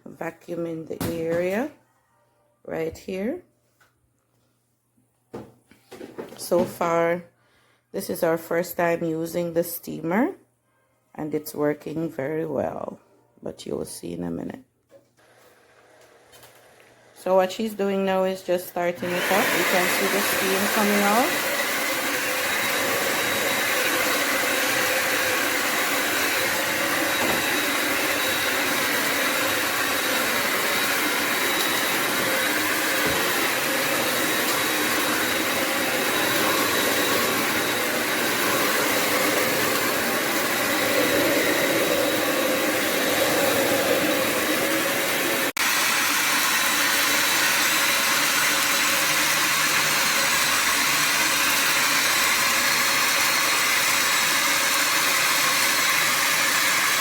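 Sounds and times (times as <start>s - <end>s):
vacuum motor whirring: 15.2s - 57.0s.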